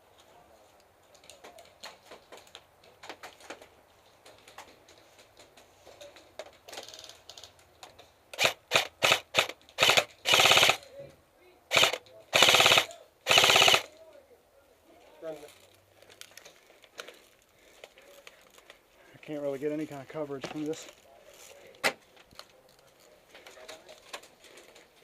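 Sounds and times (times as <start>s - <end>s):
airsoft gun shots: 8.4s - 10.8s, 11.7s - 13.9s.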